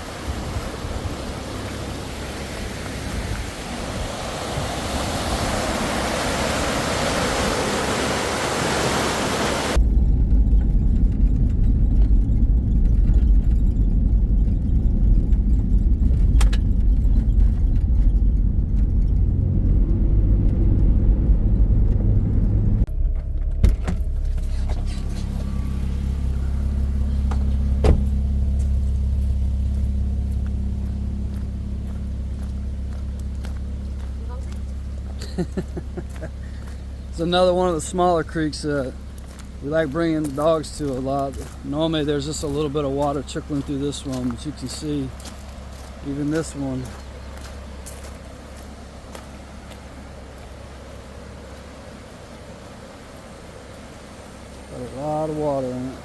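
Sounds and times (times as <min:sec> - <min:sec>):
creek rushing: 0:00.0 - 0:09.8, 0:24.3 - 0:56.0
car engine and road noise: 0:00.0 - 0:56.0.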